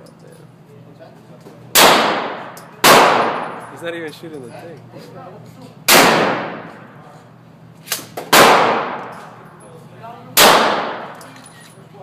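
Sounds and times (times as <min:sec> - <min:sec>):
gunshots with echoing tail: 0:01.8 - 0:03.7, 0:05.9 - 0:06.8, 0:08.3 - 0:09.1, 0:10.4 - 0:11.2.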